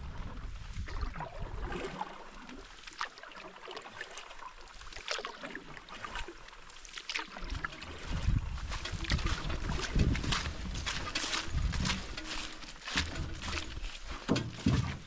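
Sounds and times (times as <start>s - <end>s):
wind rumble on microphone: 0.0s - 1.8s, 7.4s - 15.0s
paddle strokes splashing in water: 0.0s - 15.0s.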